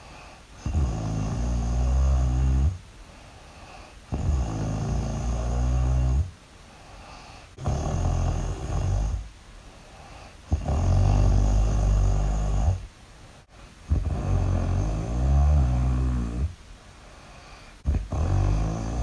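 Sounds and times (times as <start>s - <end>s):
quiet breaths: 0.0s - 19.0s
loud snoring: 0.6s - 2.8s, 3.6s - 6.4s, 7.6s - 9.3s, 10.1s - 12.9s, 13.9s - 16.6s, 17.8s - 19.0s.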